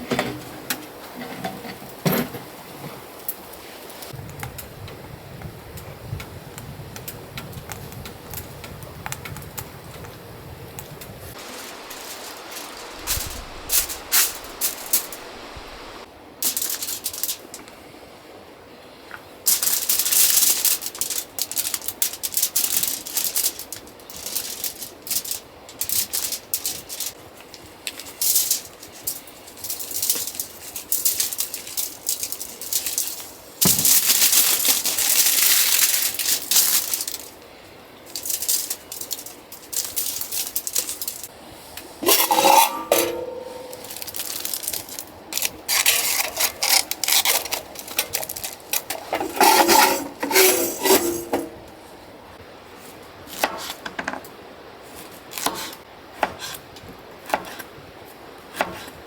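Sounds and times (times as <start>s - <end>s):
loud rustling or scraping: 11.2s - 17.5s, 19.5s - 27.2s, 27.9s - 37.4s, 38.1s - 52.0s
small clicks and rattles: 16.4s - 17.7s, 19.5s - 37.4s, 38.1s - 41.3s, 42.1s - 51.5s.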